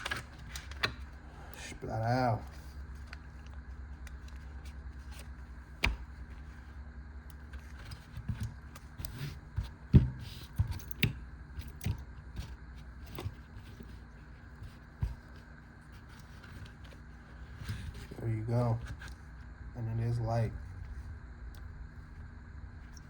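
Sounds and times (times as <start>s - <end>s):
low steady hum: 0.0s - 23.0s.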